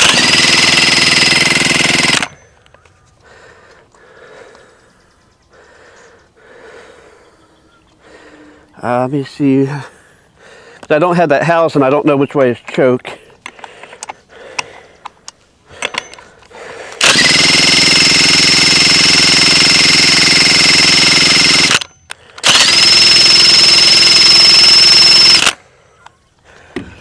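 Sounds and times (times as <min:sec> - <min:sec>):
power drill whining: 0:00.0 - 0:02.7, 0:15.7 - 0:25.6.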